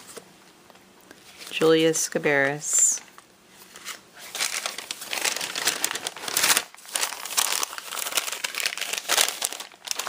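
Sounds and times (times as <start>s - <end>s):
wrapping crinkling: 3.7s - 10.0s.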